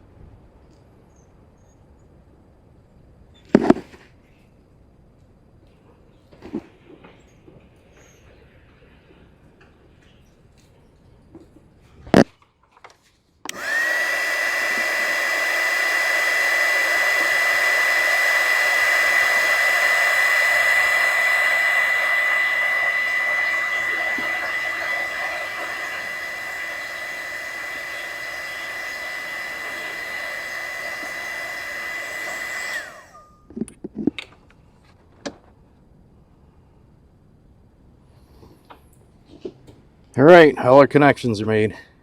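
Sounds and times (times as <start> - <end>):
heat gun fan whine: 13.4 - 34.3.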